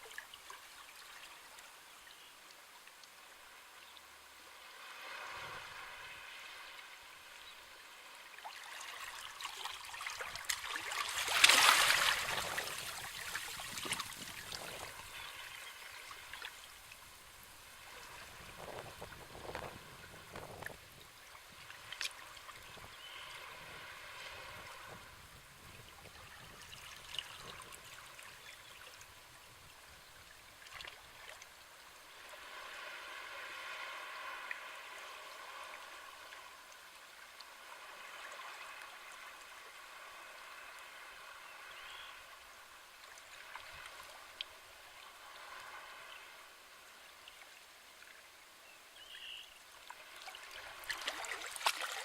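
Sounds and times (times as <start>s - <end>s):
waves lapping on shore: 3.2s - 48.2s, 49.2s - 52.0s.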